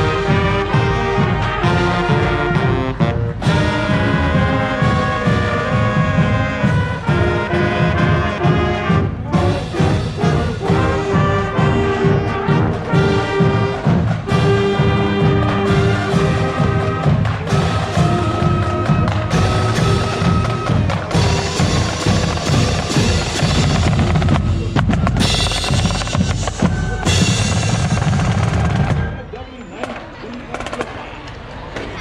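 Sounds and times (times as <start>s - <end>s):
brass sustained melody: 0.0s - 29.2s
steady drum beat: 0.0s - 29.4s
marching band playing: 0.0s - 31.0s.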